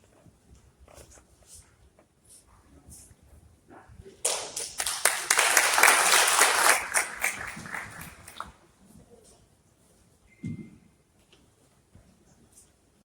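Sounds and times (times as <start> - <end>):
audience applauding: 4.3 - 8.5.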